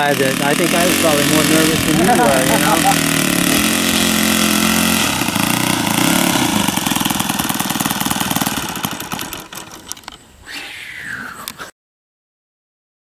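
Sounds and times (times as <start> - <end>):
model airplane engine idling: 0.0 - 10.2.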